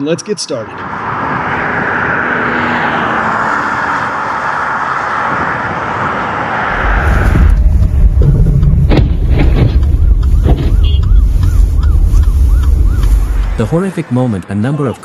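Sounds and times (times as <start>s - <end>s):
steady rushing noise: 4.0s - 15.0s
deep rumble: 6.7s - 13.8s.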